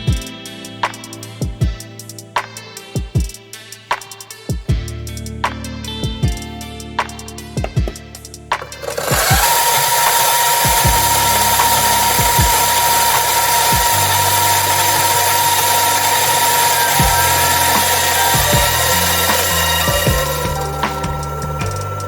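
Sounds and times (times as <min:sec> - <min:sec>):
electric coffee grinder whirring: 0:08.8 - 0:21.8.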